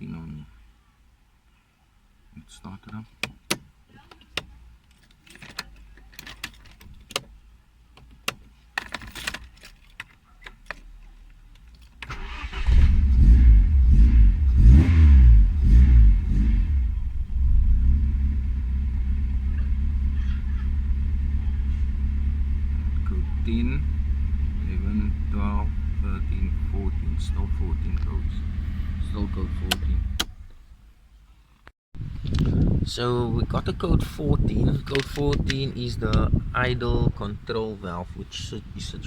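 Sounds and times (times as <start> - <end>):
car engine starting and revving: 12.1 - 30.8
engine idling: 15.4 - 30.8
sharp clicks and knocks: 29.6 - 30.4.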